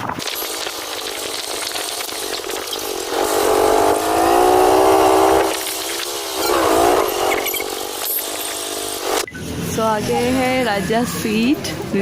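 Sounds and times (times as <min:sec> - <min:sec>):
road noise: 0:00.0 - 0:12.0
vehicle engine revving: 0:00.2 - 0:09.3.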